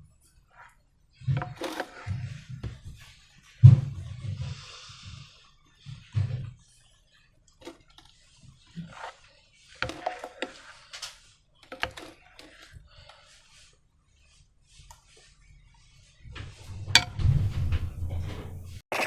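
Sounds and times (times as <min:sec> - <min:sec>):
soft low thuds: 0:16.3 - 0:18.8.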